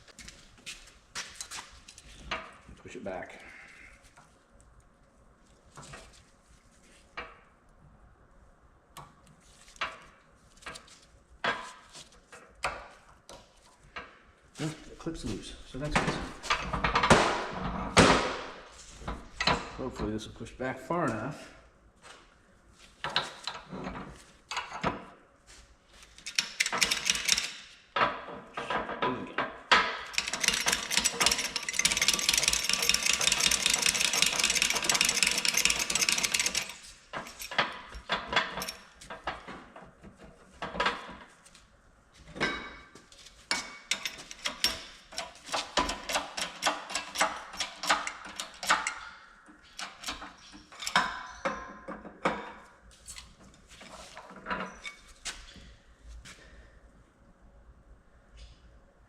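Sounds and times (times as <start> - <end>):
rapid mechanical rattling: 26.2 - 27.6, 30.1 - 37.5
metal tool clicks and knocks: 43.5 - 52.7.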